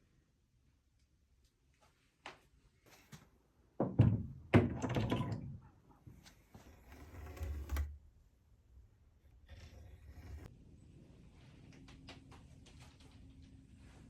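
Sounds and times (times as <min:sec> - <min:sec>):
objects knocking and thudding: 0:03.8 - 0:05.7.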